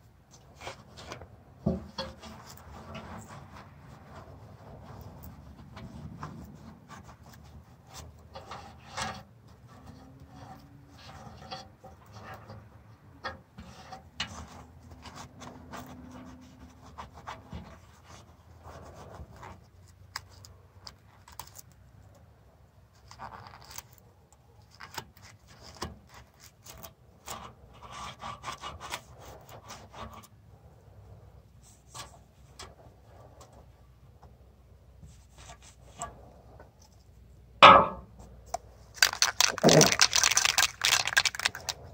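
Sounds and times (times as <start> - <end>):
small objects clicking and rustling: 38.5 - 41.9.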